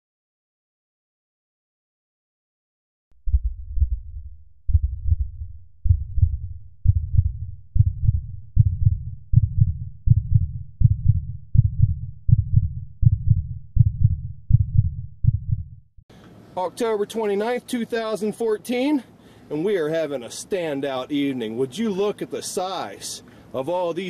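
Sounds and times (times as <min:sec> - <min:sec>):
deep heartbeat-like thumping: 0:03.2 - 0:16.0.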